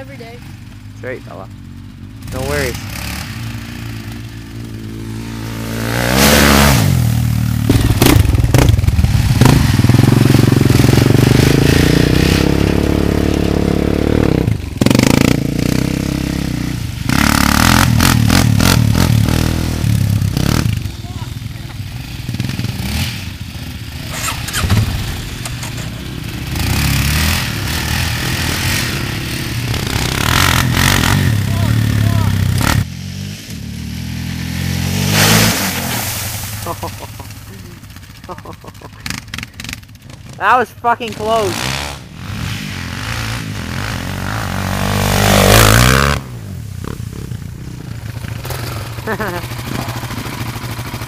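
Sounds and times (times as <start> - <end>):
quad engine revving: 0.0 - 51.0
wide hiss: 34.9 - 37.6.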